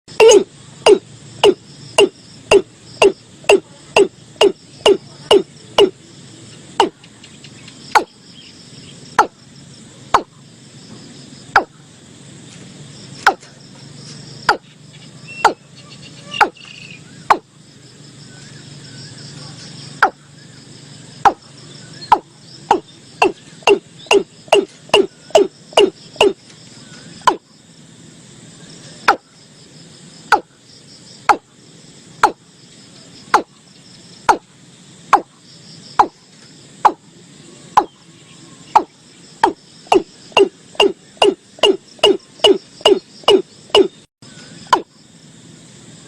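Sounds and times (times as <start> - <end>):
bird calling hollow notes: 0.1 - 6.0, 6.8 - 7.0, 7.9 - 8.2, 9.2 - 9.4, 10.1 - 10.4, 11.6 - 11.8, 13.2 - 13.5, 14.4 - 17.5, 20.0 - 20.3, 21.2 - 27.4, 29.0 - 29.3, 30.3 - 30.5, 31.3 - 31.5, 32.2 - 32.4, 33.3 - 33.6, 34.2 - 34.5, 35.1 - 35.4, 36.0 - 36.2, 36.8 - 37.0, 38.7 - 44.9
faint insects or frogs: 0.1 - 46.0.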